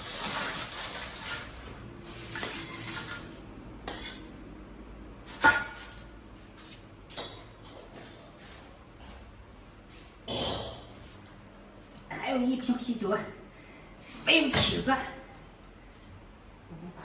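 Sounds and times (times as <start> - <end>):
dishes rustling and scraping: 0.0 - 4.4, 5.2 - 8.7.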